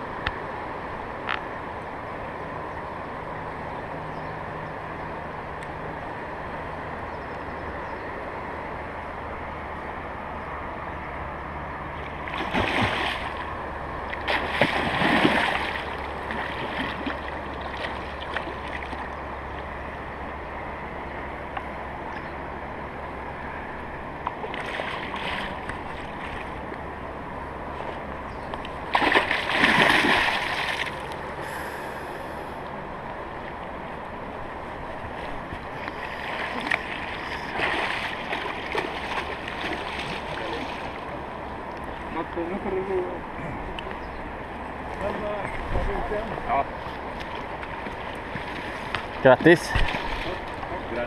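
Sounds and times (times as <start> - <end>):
fast river water rushing: 8.2 - 51.0
water splashing: 11.9 - 19.2, 24.4 - 26.6, 28.7 - 31.3, 35.0 - 42.4, 44.9 - 51.0.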